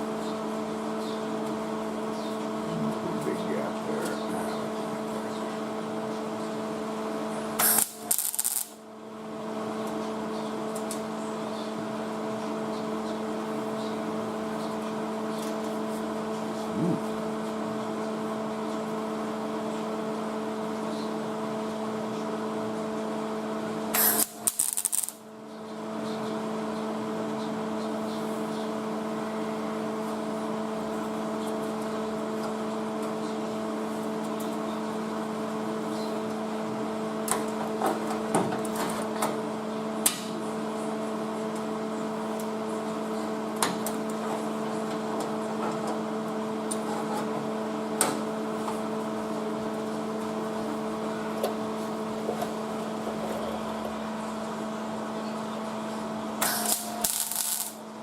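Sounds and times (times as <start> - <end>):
electrical hum: 0.0 - 58.0
welding arc crackle: 7.6 - 8.8, 23.9 - 25.2, 56.4 - 57.9.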